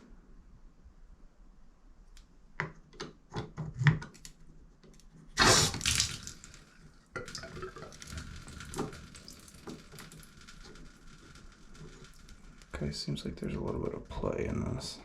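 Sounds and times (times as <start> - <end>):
water rushing from shower valve: 5.4 - 12.8.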